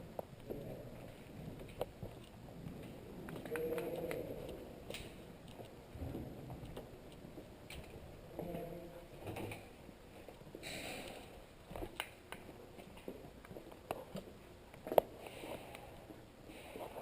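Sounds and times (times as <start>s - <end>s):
footsteps: 0.0s - 17.0s
sniffing breaths: 15.1s - 17.0s.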